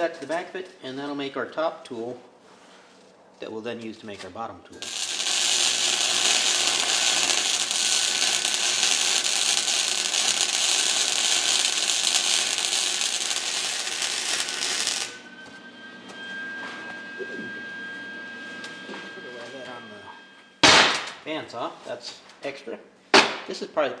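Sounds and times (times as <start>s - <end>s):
arc welding crackling hiss: 4.8s - 15.3s
faint high whine: 4.8s - 20.6s.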